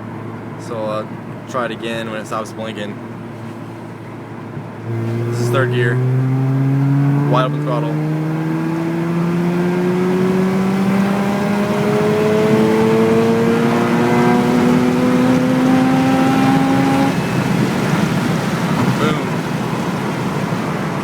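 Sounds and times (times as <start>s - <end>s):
rotary engine revving hard: 4.8s - 20.9s.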